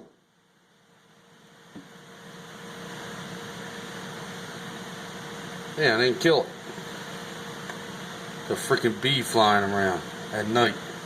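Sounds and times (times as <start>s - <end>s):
background hum and hiss: 0.0s - 11.0s.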